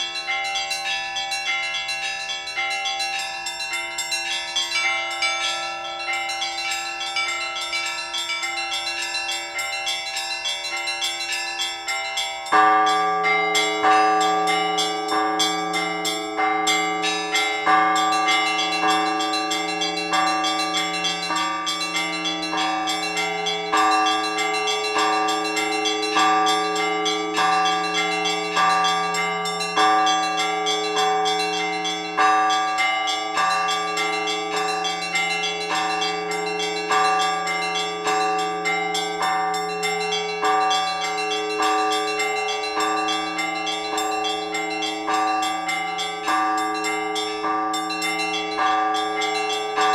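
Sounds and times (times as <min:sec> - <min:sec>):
deeper bells struck rhythmically: 0:00.0 - 0:49.9
small bells chiming: 0:00.0 - 0:49.9.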